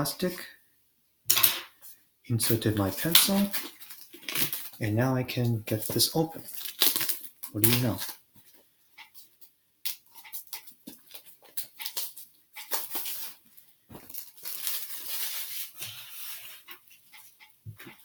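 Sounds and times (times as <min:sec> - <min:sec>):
plastic shrink-wrap crinkling: 0:02.9 - 0:04.8, 0:05.7 - 0:08.2, 0:10.9 - 0:16.6.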